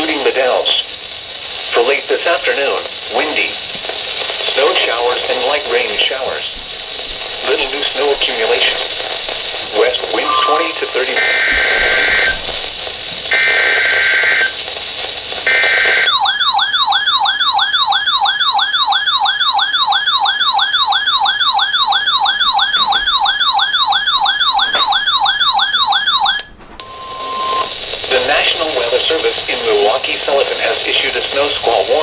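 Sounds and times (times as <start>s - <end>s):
buzzy data bursts: 3.1s - 14.6s
warbling electronic alert tone: 9.8s - 12.5s.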